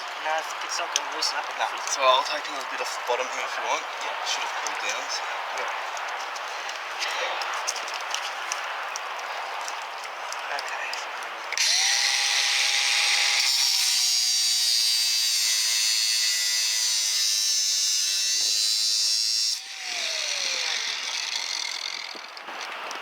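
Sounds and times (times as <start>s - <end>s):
angle grinder cutting metal: 11.6s - 22.3s
motor winding down: 11.6s - 22.3s.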